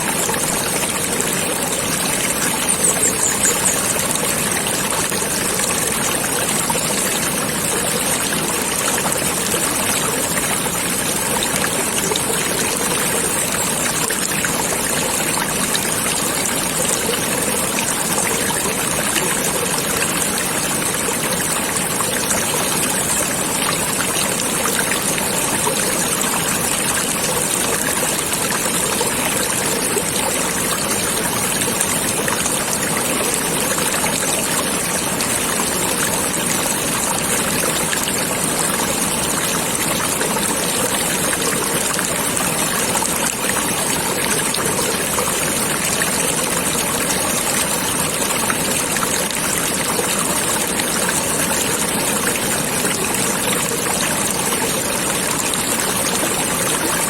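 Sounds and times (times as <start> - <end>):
stream water babbling: 0.0 - 57.0
high chirping: 2.7 - 3.8.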